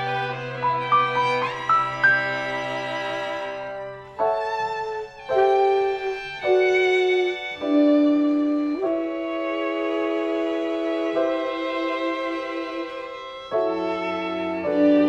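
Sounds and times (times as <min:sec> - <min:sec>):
string chord with cello: 0:00.0 - 0:15.0
violin bowed notes: 0:00.0 - 0:15.0.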